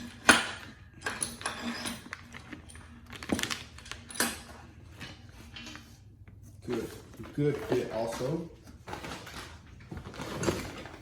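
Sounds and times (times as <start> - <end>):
metal clamp clinking and knocking: 0.0 - 4.6.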